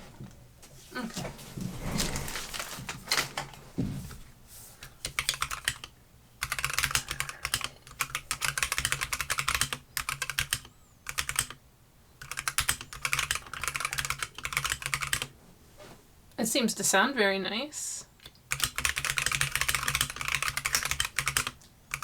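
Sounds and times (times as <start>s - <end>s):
mechanical keyboard typing: 5.0s - 11.6s, 12.2s - 15.3s, 18.5s - 22.0s.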